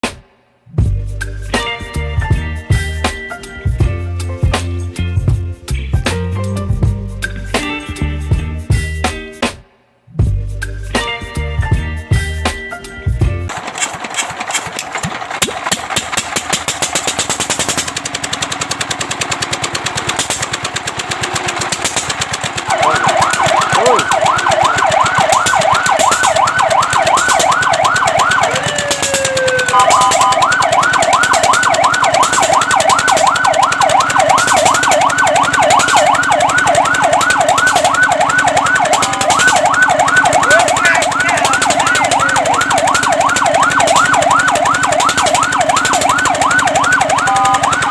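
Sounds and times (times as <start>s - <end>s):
engine clattering: 13.5s - 47.9s
fire truck siren yelp: 17.2s - 47.9s.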